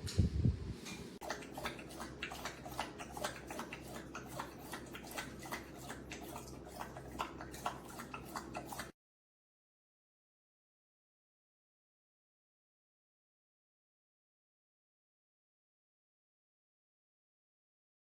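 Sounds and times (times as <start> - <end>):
dog lapping water: 1.2 - 9.0.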